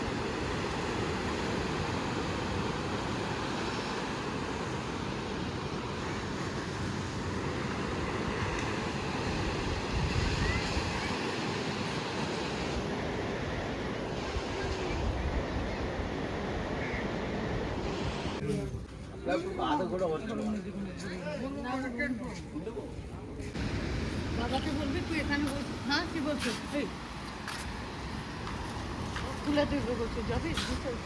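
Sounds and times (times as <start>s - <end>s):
sea surf breaking on beach: 0.0s - 18.4s, 23.6s - 31.0s
wind buffeting microphone: 8.8s - 11.4s, 27.6s - 31.0s.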